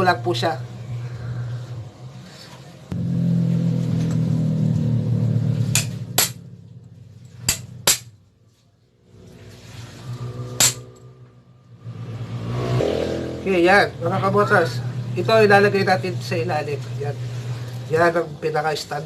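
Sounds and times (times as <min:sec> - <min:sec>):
steady low hum: 0:00.0 - 0:12.2, 0:13.4 - 0:19.0
metallic clinks of engine parts: 0:05.8 - 0:08.3.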